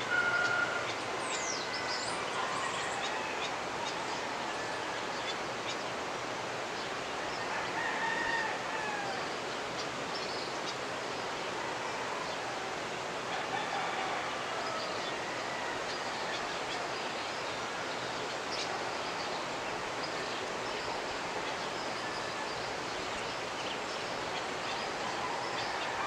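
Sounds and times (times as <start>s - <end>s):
rooster crowing: 0.0s - 0.9s, 7.4s - 9.3s, 13.3s - 16.6s, 24.9s - 26.0s
river rushing: 0.0s - 26.0s.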